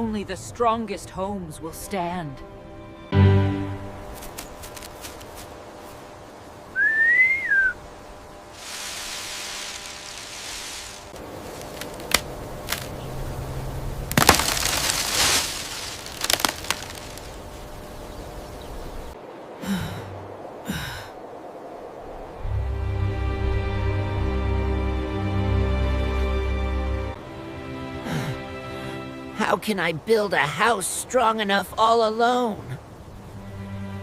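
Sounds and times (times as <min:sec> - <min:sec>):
rising and falling cartoon whistle: 0:06.8 - 0:07.8
gusts of rushing noise: 0:08.5 - 0:11.4.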